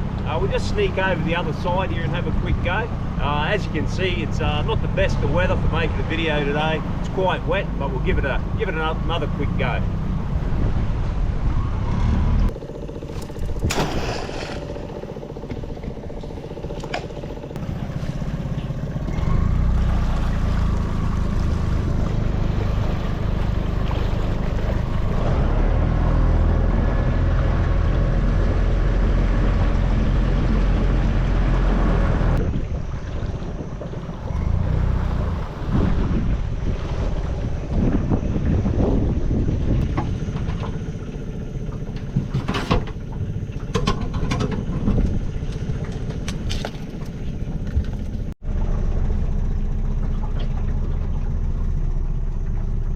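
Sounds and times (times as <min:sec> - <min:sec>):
wind buffeting microphone: 0:00.0 - 0:19.2, 0:27.7 - 0:48.4
outboard motor running: 0:00.0 - 0:52.9.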